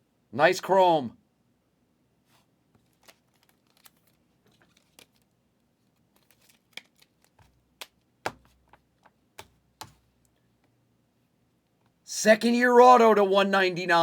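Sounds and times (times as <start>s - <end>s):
trading cards clicking and tapping: 6.2s - 10.0s.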